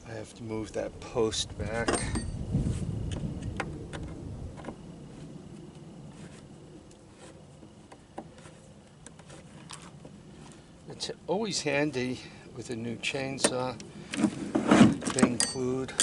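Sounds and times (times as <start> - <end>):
low rumble: 0.8 - 6.8.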